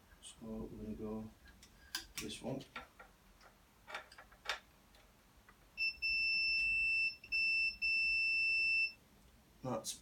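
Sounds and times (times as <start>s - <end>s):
multimeter continuity beep: 5.8s - 9.0s.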